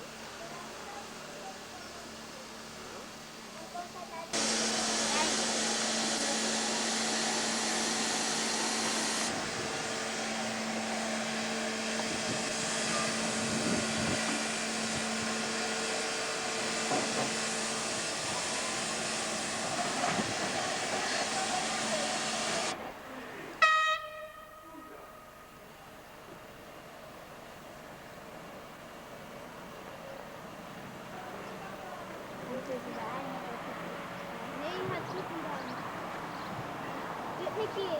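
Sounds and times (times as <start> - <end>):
steam hissing: 4.4 - 22.9
steam whistle blast: 23.6 - 25.5.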